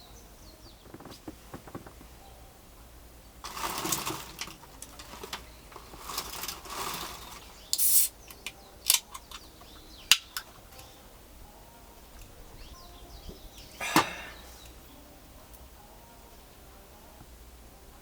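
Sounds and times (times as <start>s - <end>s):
rustling handling noises: 3.4s - 11.0s
short hissing scrape: 7.7s - 8.1s.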